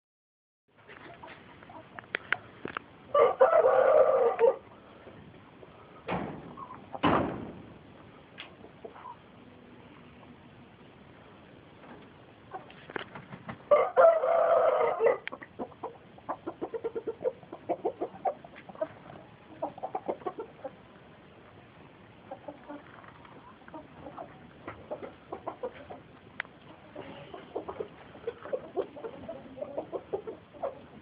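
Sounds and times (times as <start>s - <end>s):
chickens clucking: 0.8s - 11.0s, 11.7s - 31.0s
rooster crowing: 3.1s - 4.6s, 13.7s - 15.3s.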